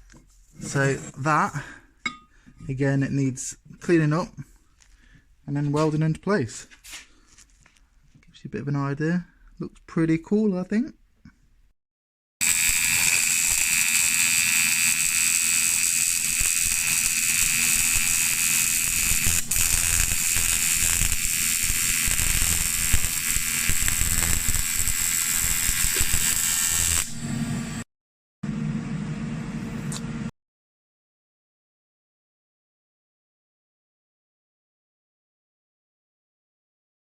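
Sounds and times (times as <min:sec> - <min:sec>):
power tool grinding metal: 0:12.4 - 0:27.4.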